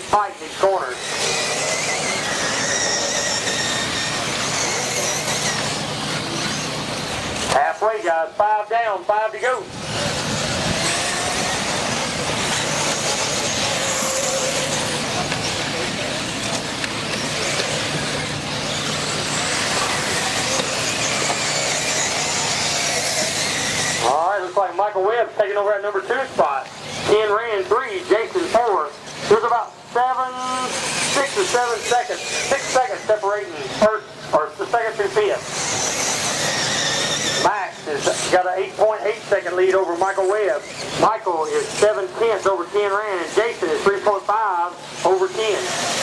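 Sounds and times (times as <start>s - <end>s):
rc buggy motors whining: 0.0s - 8.1s, 9.3s - 46.0s
rush of track noise: 9.6s - 24.8s, 26.2s - 39.4s.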